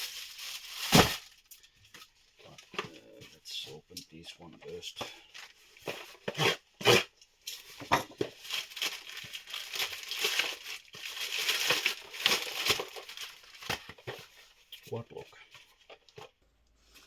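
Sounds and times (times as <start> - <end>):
plastic wrapping crinkling: 0.0 - 1.8, 7.5 - 14.5.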